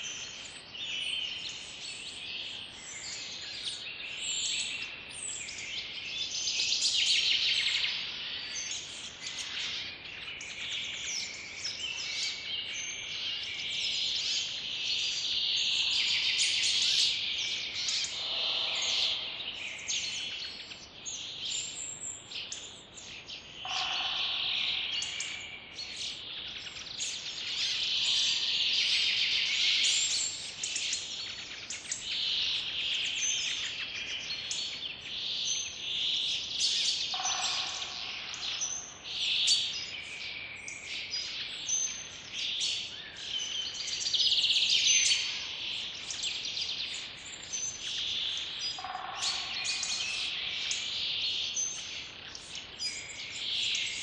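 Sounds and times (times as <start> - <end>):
birds chirping and trilling: 0.0 - 54.0
fuller lower bird call: 18.0 - 20.0.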